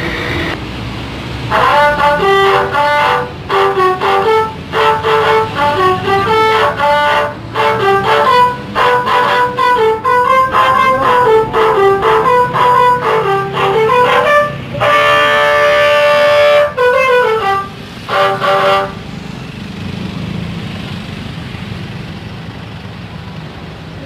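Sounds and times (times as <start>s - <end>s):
low vehicle and road rumble: 0.0s - 24.0s
musical bus air horn: 1.5s - 19.2s.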